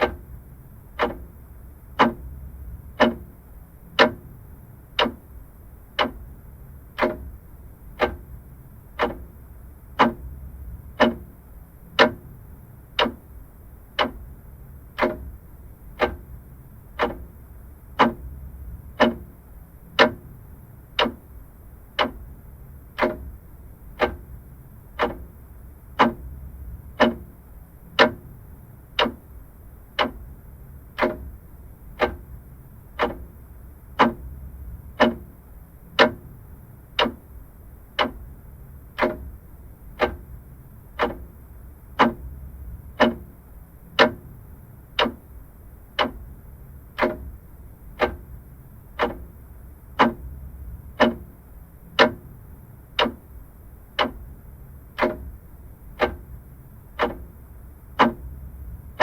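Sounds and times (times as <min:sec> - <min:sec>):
clock ticking: 0:00.0 - 0:59.0
low steady hum: 0:00.0 - 0:59.0.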